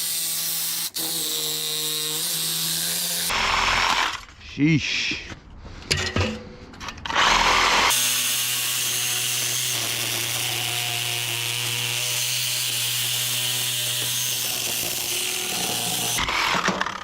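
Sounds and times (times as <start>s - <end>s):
reciprocating saw cutting metal: 7.1s - 16.8s.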